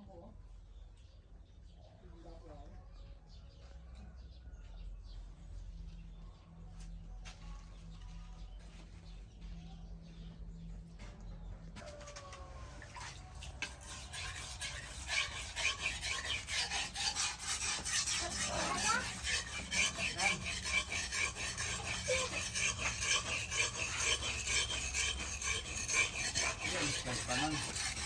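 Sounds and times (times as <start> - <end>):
abrasive rasping on knife: 13.4 - 28.0.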